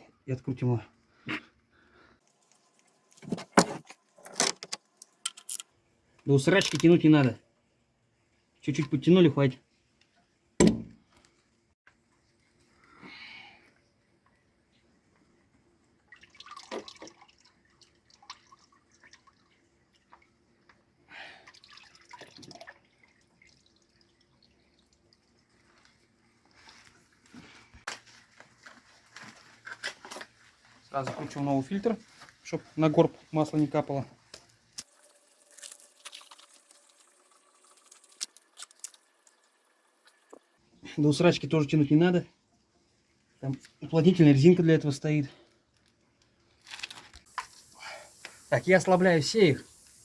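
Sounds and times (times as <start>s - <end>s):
oil dripping: 47.2s - 50.0s.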